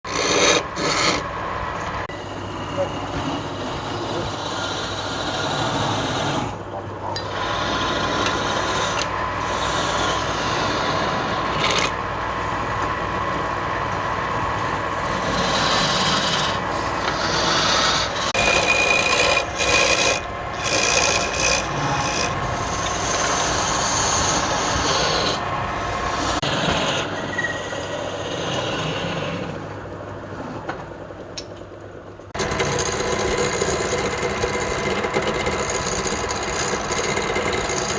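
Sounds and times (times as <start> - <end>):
turning tool scraping wood: 0.0 - 1.3, 2.6 - 6.6, 7.2 - 12.0, 15.0 - 29.5, 32.4 - 37.9
wood lathe motor hum: 0.1 - 1.3, 2.1 - 6.6, 7.2 - 29.4, 32.4 - 37.9.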